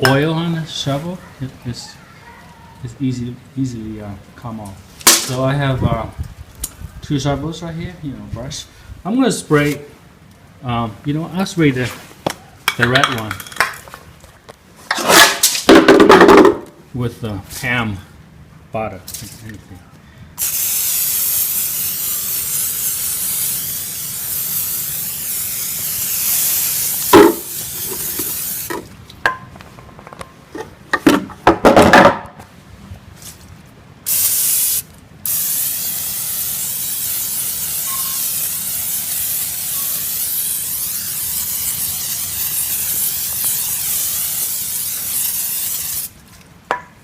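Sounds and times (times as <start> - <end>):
aerosol spray hissing: 20.4 - 28.8, 34.1 - 46.1.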